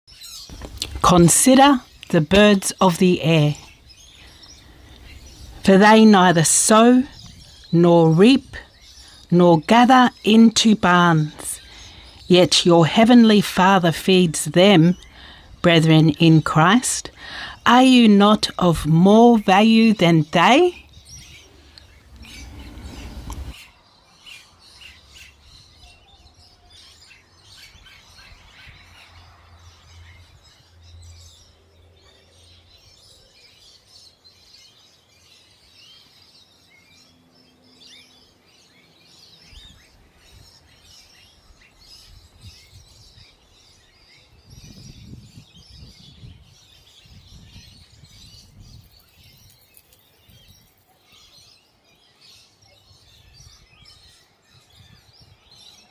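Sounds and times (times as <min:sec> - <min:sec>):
small birds chirping: 0:00.1 - 0:55.9
low rumbling and thumping: 0:21.9 - 0:23.6.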